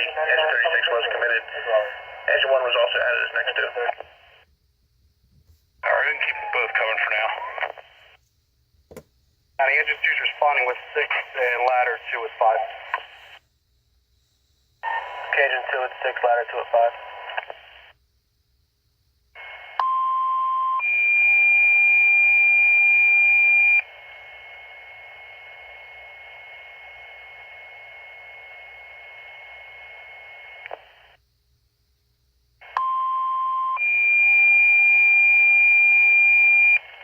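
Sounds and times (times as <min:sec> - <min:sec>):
radio hiss: 0:00.0 - 0:04.5, 0:05.8 - 0:08.2, 0:09.6 - 0:13.4, 0:14.8 - 0:18.0, 0:23.8 - 0:31.2, 0:34.7 - 0:37.0.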